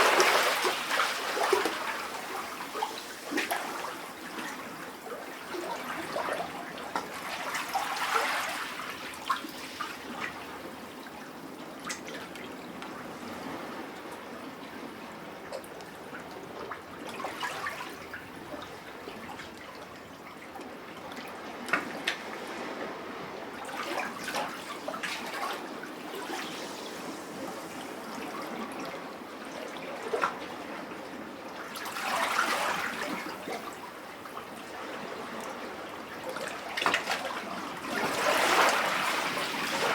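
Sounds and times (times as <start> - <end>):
water drips and splashes: 0.0 - 4.6
sea water lapping in rock cavity: 0.0 - 10.4, 31.7 - 39.9.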